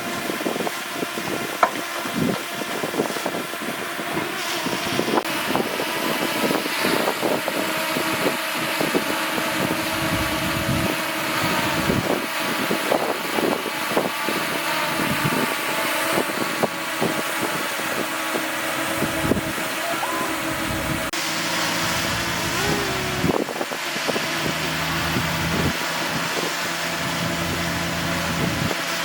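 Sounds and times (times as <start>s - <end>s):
diesel machinery running: 6.2s - 29.0s.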